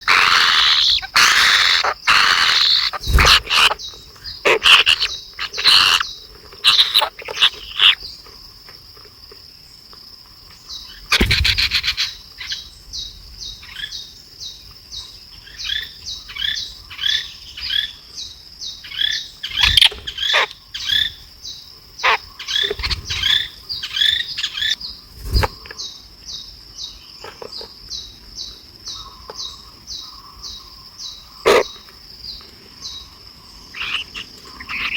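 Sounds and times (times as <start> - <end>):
nestlings chirping shrilly: 0.0 - 8.0, 11.0 - 12.5, 19.4 - 21.0, 22.0 - 25.6, 33.7 - 34.9
high insect buzz: 0.0 - 34.9
dull thumps: 11.1 - 12.0.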